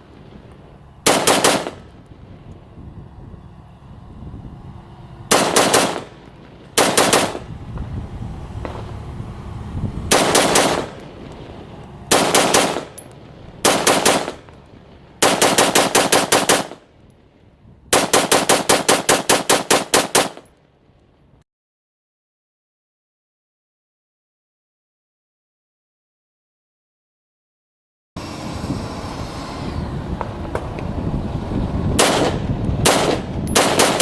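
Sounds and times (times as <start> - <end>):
rifle shots fired rapidly: 1.1 - 1.8, 5.3 - 6.1, 6.8 - 7.4, 10.1 - 11.0, 12.1 - 12.9, 13.6 - 14.4, 15.2 - 16.8, 18.0 - 20.4, 32.0 - 34.0.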